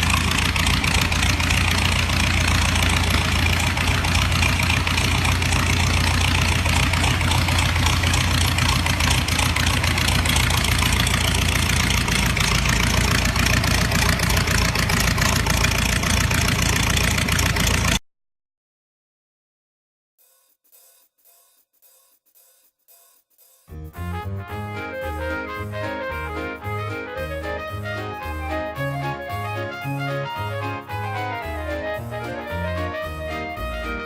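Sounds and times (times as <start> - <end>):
old car engine idling: 0.0 - 18.0.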